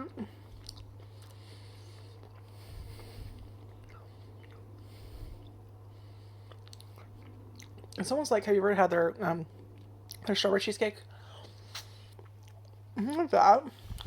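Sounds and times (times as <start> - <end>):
steady low hum: 0.0 - 14.0
person chewing ice cream: 0.1 - 8.1, 9.5 - 10.3, 11.3 - 13.2.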